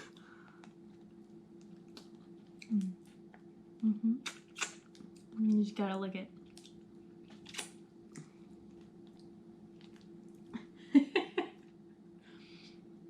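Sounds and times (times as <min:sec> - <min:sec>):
steady low hum: 0:00.0 - 0:13.0
wet mouth sounds chewing toffee: 0:00.1 - 0:03.5, 0:04.2 - 0:05.4, 0:06.4 - 0:10.5.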